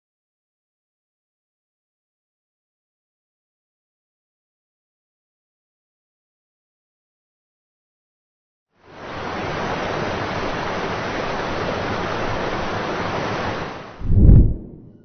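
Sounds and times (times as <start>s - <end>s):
loud low thump: 14.0s - 15.0s
steady rushing noise: 14.0s - 15.0s.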